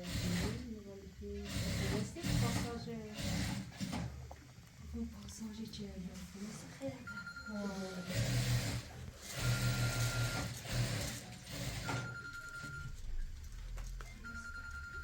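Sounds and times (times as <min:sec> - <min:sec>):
telephone ringing tone beeps: 0:07.0 - 0:08.4, 0:09.4 - 0:10.5, 0:11.8 - 0:13.3, 0:14.1 - 0:15.0.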